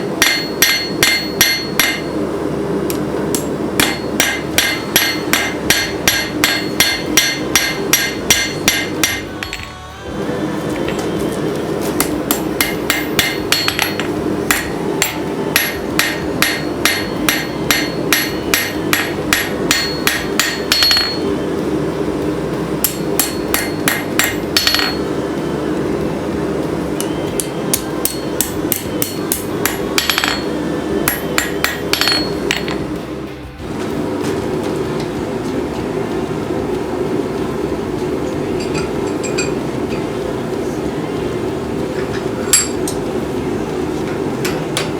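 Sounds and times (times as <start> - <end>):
hammer striking steel on anvil: 0.0 - 2.2, 3.3 - 9.8, 12.0 - 21.3, 22.8 - 25.2, 27.0 - 33.0, 42.0 - 43.0
steady drone: 0.0 - 44.9.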